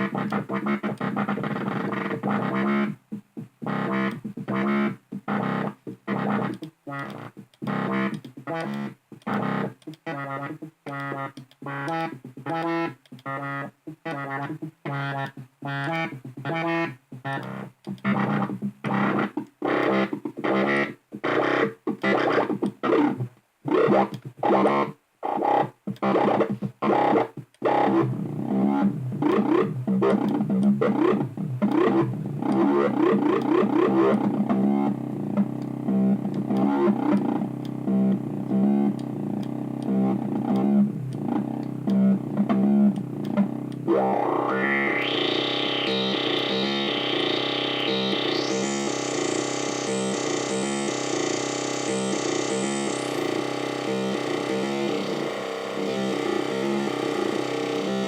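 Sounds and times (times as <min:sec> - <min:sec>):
synthesizer chord stabs: 0:00.0 - 0:22.5, 0:23.7 - 0:58.0
sustained synthesizer pad: 0:27.7 - 0:58.0.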